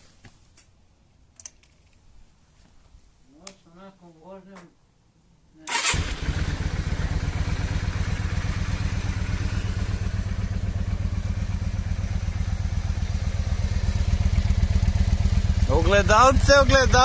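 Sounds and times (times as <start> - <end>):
motorcycle engine idling: 5.8 - 17.0.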